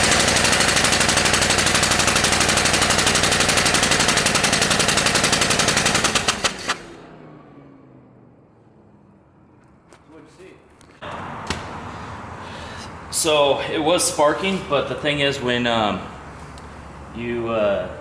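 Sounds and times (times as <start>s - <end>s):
engine cranking on starter: 0.0s - 7.4s.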